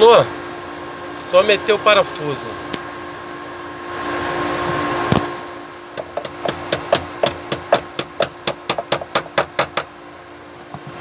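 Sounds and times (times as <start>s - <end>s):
hammer knocking on metal pin: 6.0s - 9.9s.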